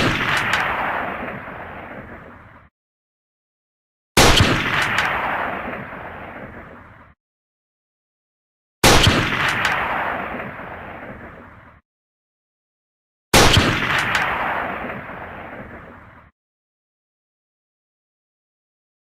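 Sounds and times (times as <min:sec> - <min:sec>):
rifle shots: 0:00.0 - 0:02.0, 0:04.2 - 0:06.6, 0:08.8 - 0:11.2, 0:13.4 - 0:15.8.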